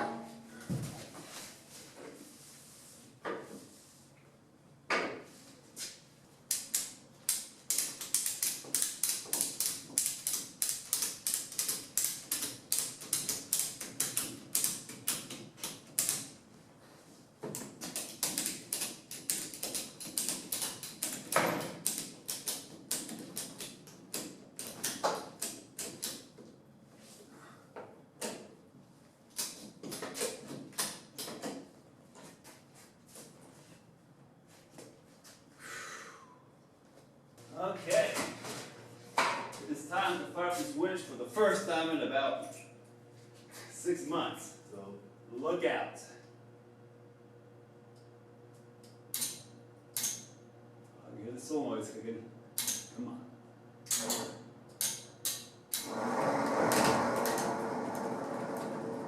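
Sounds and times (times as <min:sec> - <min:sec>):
sharp clicks: 0:52.6 - 0:52.9.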